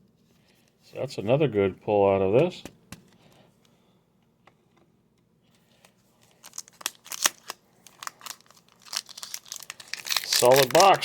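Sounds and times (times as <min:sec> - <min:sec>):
foil wrapper crinkling and tearing: 0:06.2 - 0:11.0.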